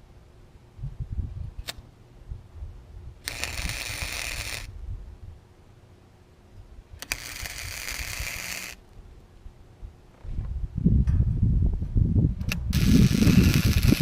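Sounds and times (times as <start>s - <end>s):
welding arc crackling: 3.2s - 4.7s, 7.0s - 8.8s, 12.7s - 14.0s
low handling bumps: 10.1s - 12.7s.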